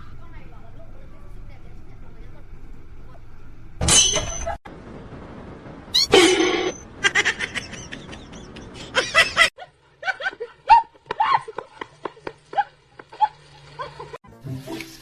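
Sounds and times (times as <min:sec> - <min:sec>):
loud sudden noise: 0:04.7 - 0:07.2
people laughing: 0:07.0 - 0:14.2.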